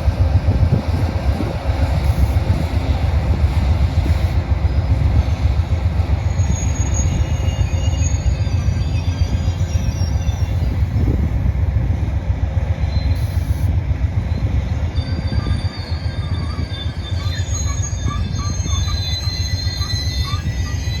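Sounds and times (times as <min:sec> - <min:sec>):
train wheels rumbling on rail: 0:00.0 - 0:21.0
high wheel squeals: 0:00.5 - 0:11.3, 0:12.7 - 0:21.0
short squeaks: 0:14.9 - 0:21.0.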